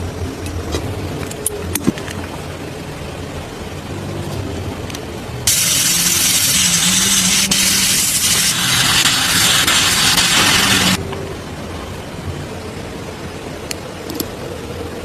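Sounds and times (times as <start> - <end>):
paint spraying hiss: 5.4 - 11.0.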